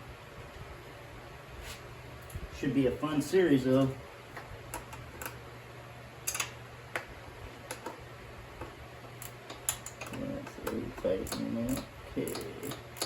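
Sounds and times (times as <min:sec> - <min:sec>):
faint steady hum: 0:00.0 - 0:13.0
ratcheting wrench clicking: 0:09.2 - 0:13.0.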